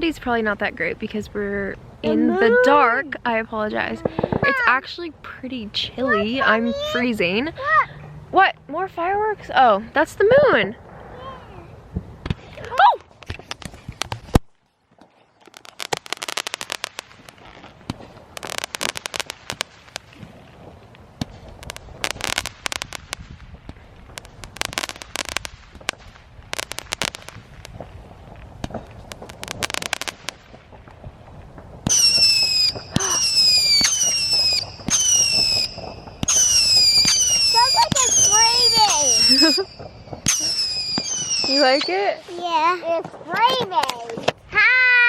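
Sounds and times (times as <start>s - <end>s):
fireworks crackling: 0.0s - 7.8s, 9.0s - 45.0s
whistling firework: 15.4s - 42.1s.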